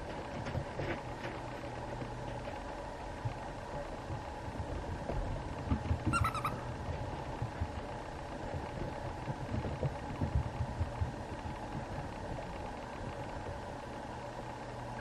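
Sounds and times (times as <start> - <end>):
puppy whimpering: 6.1 - 6.6.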